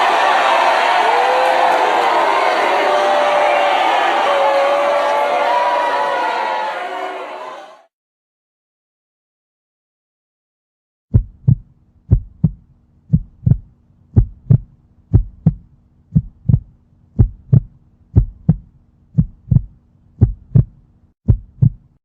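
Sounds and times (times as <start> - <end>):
heartbeat thumps: 11.1 - 22.0.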